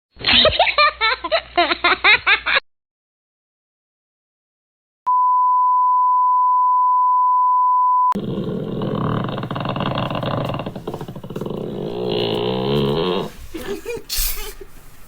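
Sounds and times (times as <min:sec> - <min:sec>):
noisy room sound: 0:08.2 - 0:15.0.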